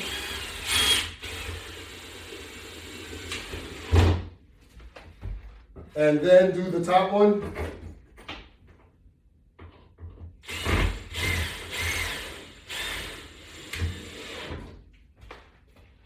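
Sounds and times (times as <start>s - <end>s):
power screwdriver motor running: 0.0s - 3.7s, 10.5s - 14.5s.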